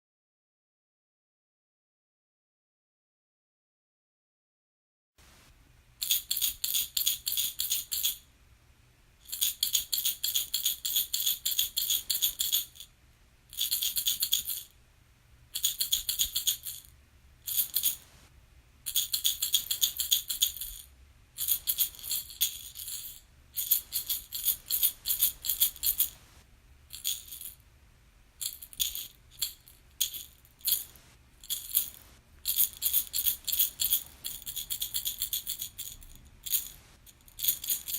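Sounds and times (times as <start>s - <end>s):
baby rattle shaking: 6.0s - 8.2s, 9.2s - 12.9s, 13.5s - 14.8s, 15.6s - 16.9s, 17.5s - 18.0s, 18.9s - 26.2s, 26.9s - 27.6s, 28.4s - 37.9s.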